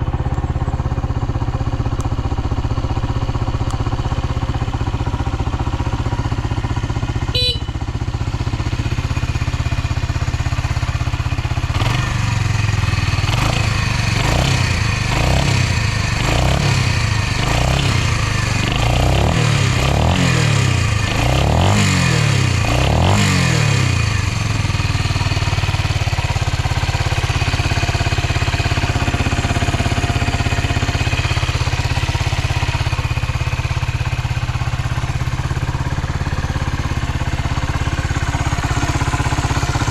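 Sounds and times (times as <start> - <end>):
motorcycle engine idling and revving: 0.0 - 39.9.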